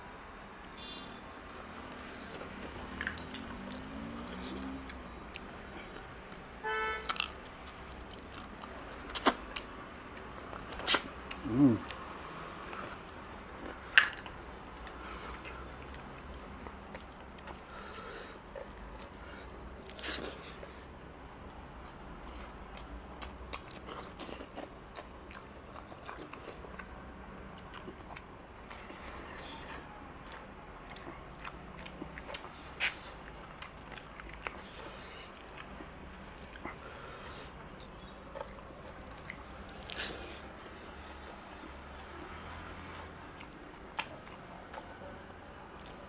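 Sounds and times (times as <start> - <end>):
person chewing food: 1.4 - 46.0
mouth clicks and smacks: 43.1 - 46.0.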